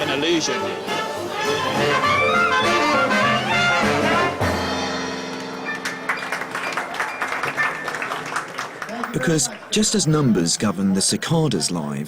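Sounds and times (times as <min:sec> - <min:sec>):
jazz band with horns: 0:00.0 - 0:08.4.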